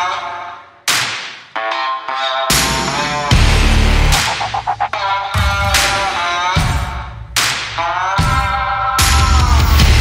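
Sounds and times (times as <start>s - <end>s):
dubstep electronic music: 0.0s - 10.0s
heavy bass drop: 3.3s - 4.8s.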